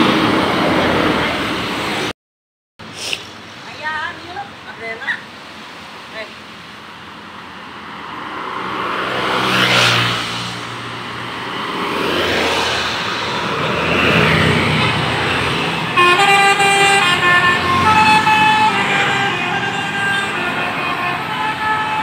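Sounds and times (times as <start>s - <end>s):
large vehicles rushing past: 0.0s - 2.1s, 7.2s - 22.0s
bus musical horn tune: 15.9s - 22.0s.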